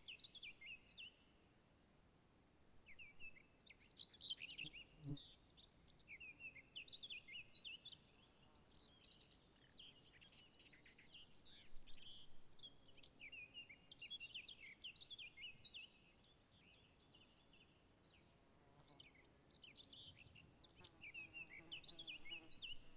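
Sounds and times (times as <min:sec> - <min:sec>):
small birds chirping: 0:18.9 - 0:22.9.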